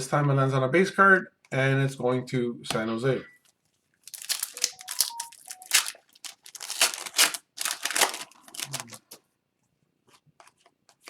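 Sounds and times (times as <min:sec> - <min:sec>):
trading cards rustling: 0:04.0 - 0:09.2.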